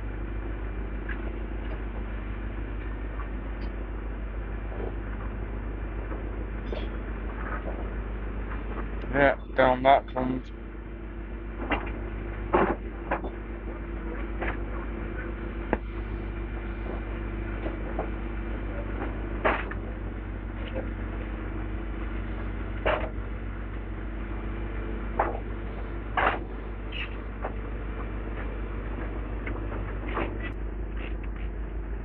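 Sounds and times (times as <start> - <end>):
excavator engine running: 0.0 - 32.0
sharp knocks and cracks: 11.6 - 13.4, 14.2 - 14.7, 19.0 - 19.8, 22.8 - 23.2, 25.2 - 25.5, 26.2 - 27.6.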